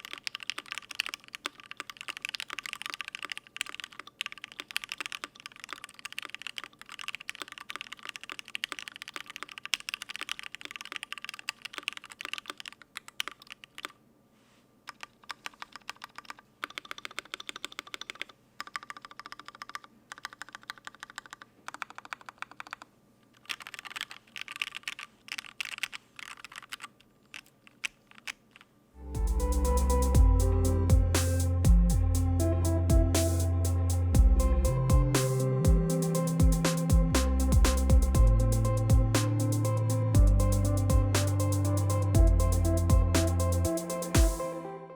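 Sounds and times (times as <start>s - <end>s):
fast typing on mechanical keyboard: 0.0s - 14.0s, 14.9s - 28.7s.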